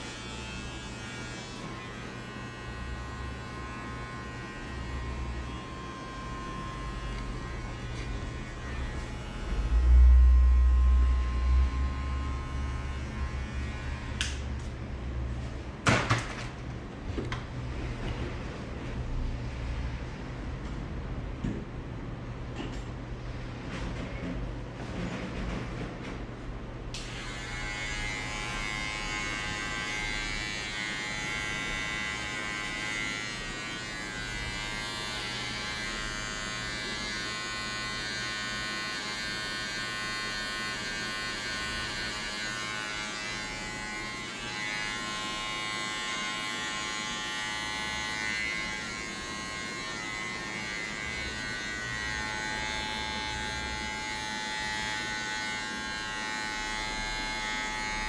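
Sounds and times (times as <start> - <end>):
electric hair clippers buzzing: 0.0 - 14.8, 27.0 - 58.0.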